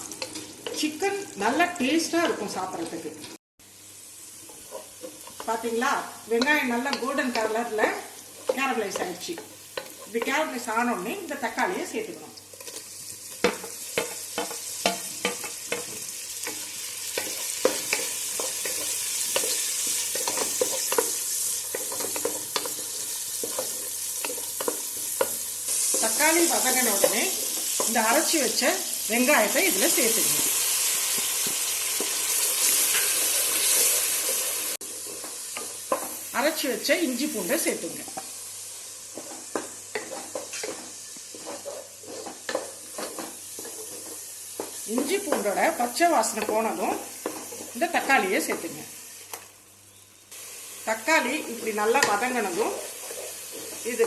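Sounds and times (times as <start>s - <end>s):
food sizzling in hot oil: 0.0s - 54.0s
spoon scraping a pan: 4.4s - 5.5s, 12.5s - 28.2s, 30.9s - 36.3s, 39.0s - 48.7s, 51.4s - 54.0s
utensil scraping a pan: 39.1s - 45.5s.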